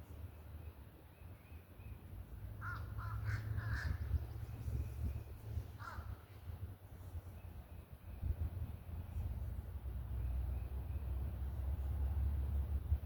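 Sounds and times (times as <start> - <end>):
low steady rumble: 1.8 - 13.0
crow cawing: 2.6 - 4.0, 5.8 - 6.2.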